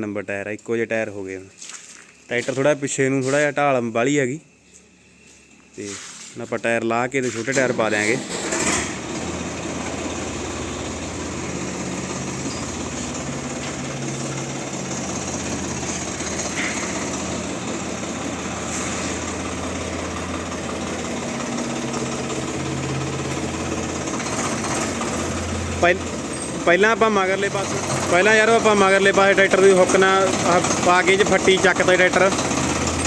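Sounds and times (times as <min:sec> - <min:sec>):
tractor diesel engine idling: 0:07.0 - 0:33.0.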